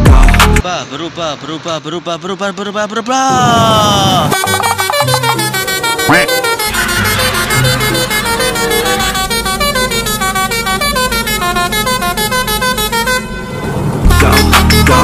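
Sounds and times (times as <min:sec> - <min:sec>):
electronic music with heavy bass: 0:00.0 - 0:00.6, 0:04.2 - 0:09.0, 0:14.0 - 0:15.0
multi-tone bus horn tune: 0:04.3 - 0:15.0.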